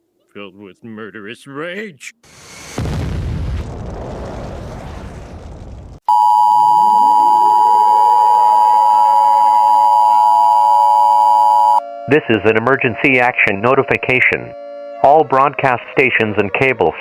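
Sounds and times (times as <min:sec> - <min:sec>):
rumbling noise: 0:02.3 - 0:06.0
two-tone alert signal: 0:06.1 - 0:16.7.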